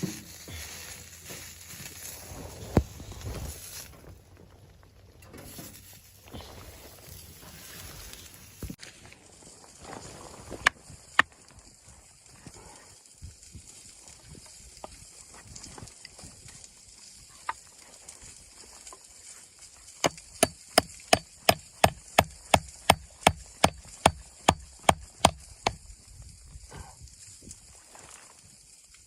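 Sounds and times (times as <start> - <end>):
tool knocking on wood: 20.0 - 25.8.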